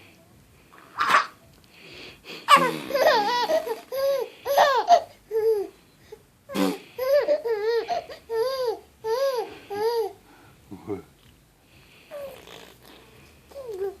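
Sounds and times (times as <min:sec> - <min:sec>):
baby giggling: 0:02.5 - 0:05.7.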